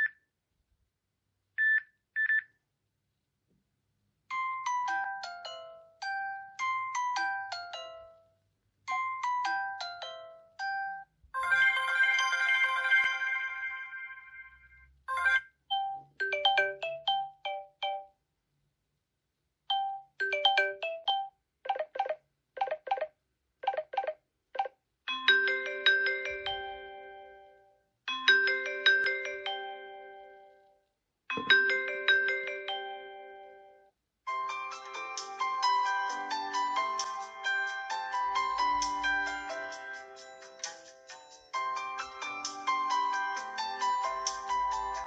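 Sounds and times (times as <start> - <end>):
phone ringtone jingles: 8.9 - 18.1.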